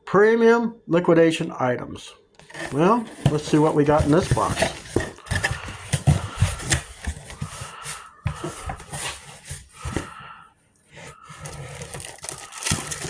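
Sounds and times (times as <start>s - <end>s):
cardboard rustling: 2.4s - 10.2s, 10.9s - 13.0s
cardboard box knocks and scrapes: 2.5s - 7.6s.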